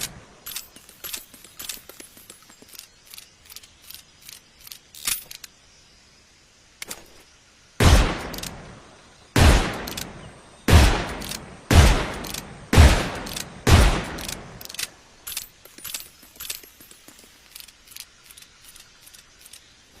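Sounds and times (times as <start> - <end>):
light metallic clicks: 0.0 - 5.6, 9.7 - 10.2, 12.1 - 12.5, 13.1 - 20.0
revolver gunshots with echo: 7.8 - 8.7, 9.4 - 14.6.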